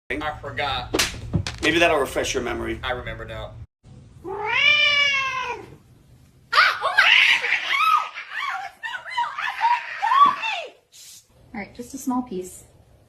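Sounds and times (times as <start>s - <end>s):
cat meowing: 4.2s - 5.8s.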